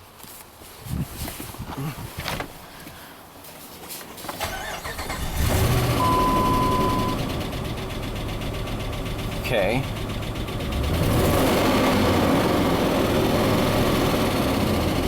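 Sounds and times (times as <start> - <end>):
car engine idling: 4.4 - 15.0
steady beep: 6.0 - 7.2.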